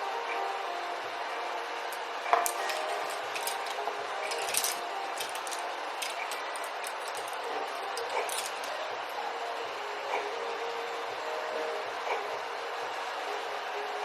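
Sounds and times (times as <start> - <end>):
room hum: 0.0 - 14.0
makeup cases clicking: 2.4 - 8.8.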